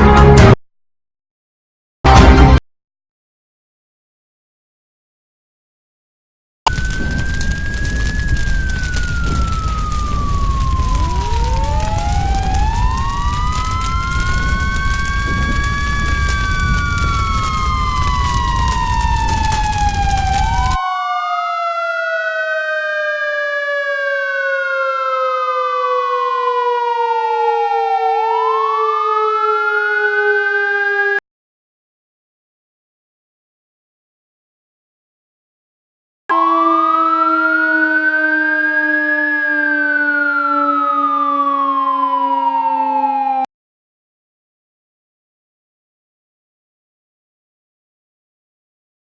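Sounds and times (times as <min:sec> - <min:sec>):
siren wailing: 0:06.7 - 0:31.2, 0:36.3 - 0:43.5.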